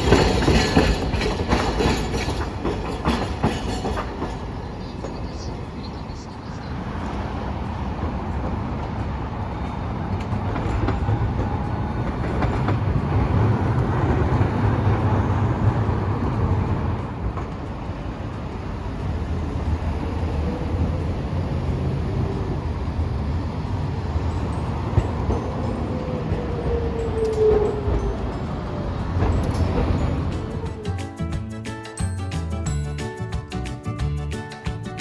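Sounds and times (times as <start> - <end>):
streetcar wheels and motors rumbling: 0.0 - 35.0.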